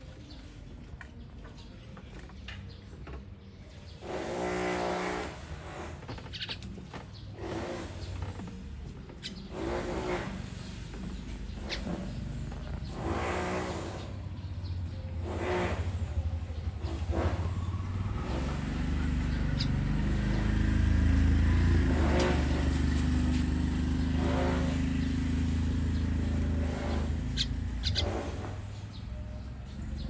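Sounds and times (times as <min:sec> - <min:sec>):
vehicle engine passing by: 0:04.0 - 0:30.0
short pitched calls: 0:19.3 - 0:20.8, 0:21.8 - 0:28.7.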